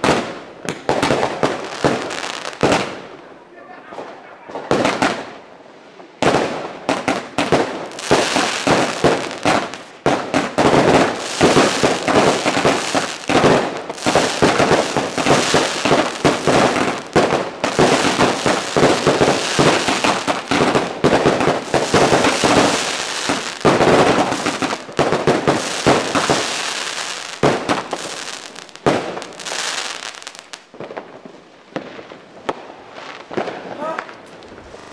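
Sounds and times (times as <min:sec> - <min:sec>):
fireworks bangs and crackles: 0:00.0 - 0:03.3, 0:03.9 - 0:34.9.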